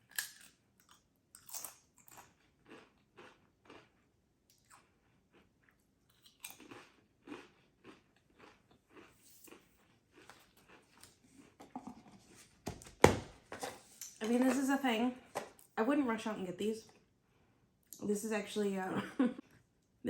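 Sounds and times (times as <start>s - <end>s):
crunching and chewing crisps: 0.0s - 11.6s.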